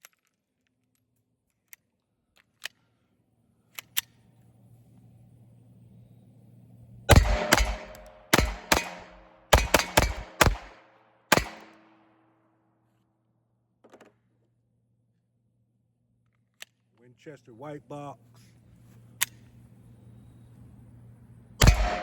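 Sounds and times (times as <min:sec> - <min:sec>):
pistol shots cracking: 0:07.1 - 0:12.1, 0:21.6 - 0:22.0.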